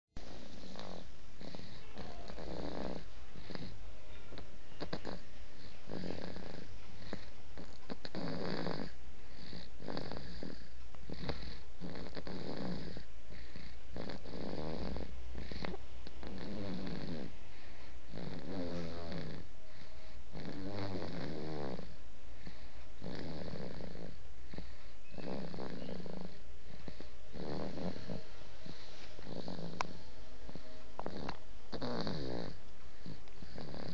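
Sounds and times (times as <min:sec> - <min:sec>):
low steady hum: 0:00.0 - 0:33.9
man snoring: 0:00.2 - 0:03.8, 0:04.8 - 0:17.3, 0:18.1 - 0:19.5, 0:20.3 - 0:22.0, 0:23.0 - 0:33.9.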